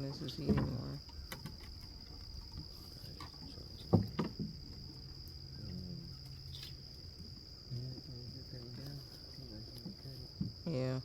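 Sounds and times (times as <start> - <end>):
insects droning: 0.0 - 11.0.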